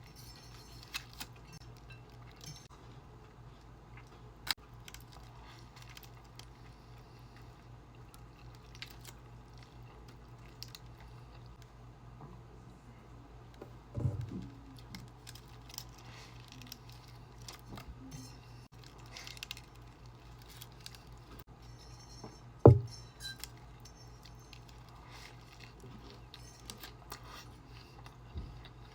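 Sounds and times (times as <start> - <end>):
chewing food: 1.1 - 11.6, 24.2 - 28.9
light clinking or crinkling: 14.8 - 28.9
low thump: 22.7 - 22.9.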